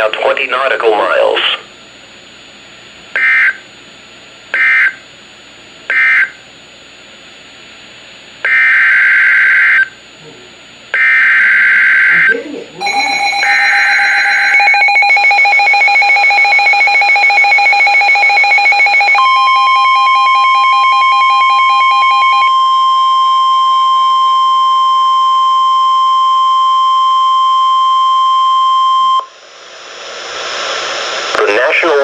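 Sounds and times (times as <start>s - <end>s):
steady warning alarm tone: 3.2s - 3.7s, 4.5s - 5.1s, 5.9s - 6.4s, 8.4s - 10.0s, 10.9s - 29.4s
rapid pulsing electronic beeps: 11.2s - 23.1s.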